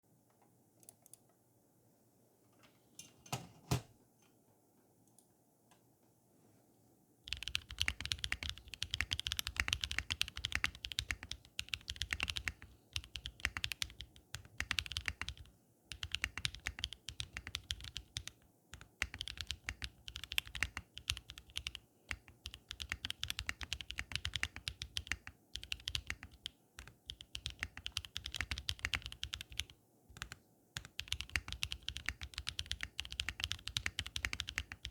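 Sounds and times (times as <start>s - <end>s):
typing on a mechanical keyboard: 7.3s - 34.9s.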